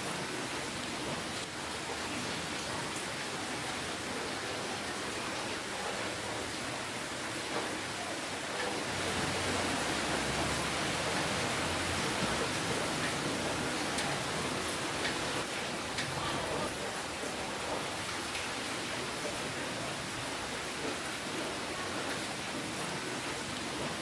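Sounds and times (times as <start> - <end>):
steady rainfall: 0.0 - 24.0
raindrop ticks: 0.1 - 6.8, 7.4 - 24.0.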